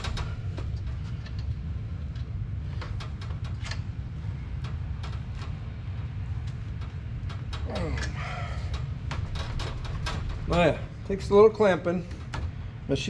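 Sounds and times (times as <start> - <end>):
low rumble: 0.0 - 13.0.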